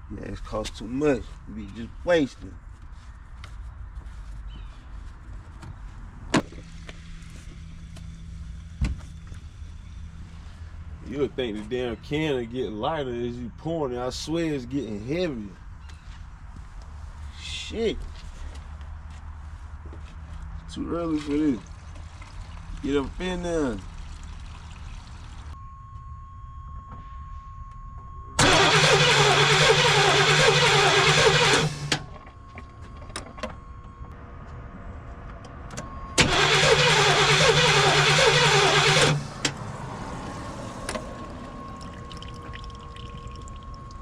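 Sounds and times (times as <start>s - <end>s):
engine cranking on starter: 28.4s - 32.2s, 36.2s - 39.6s.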